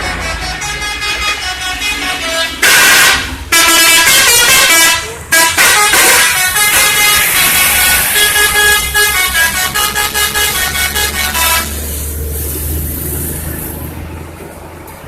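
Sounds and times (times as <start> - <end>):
bus musical horn: 0.0 - 12.1
bus engine running: 0.0 - 15.0.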